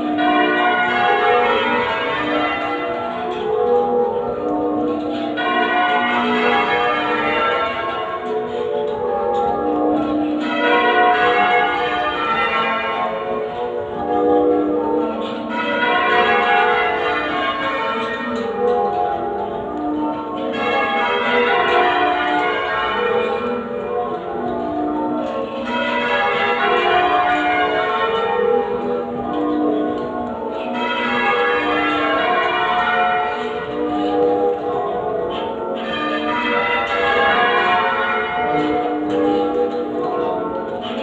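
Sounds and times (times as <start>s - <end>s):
church bells change ringing: 0.0s - 41.0s.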